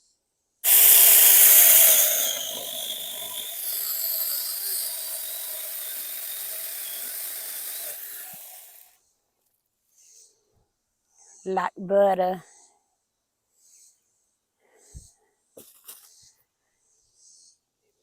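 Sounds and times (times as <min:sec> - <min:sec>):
electric chainsaw cutting wood: 0:00.6 - 0:08.9.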